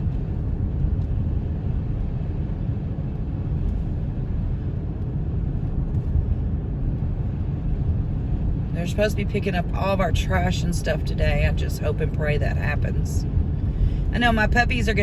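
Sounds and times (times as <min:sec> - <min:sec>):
car road and engine rumble: 0:00.0 - 0:15.0.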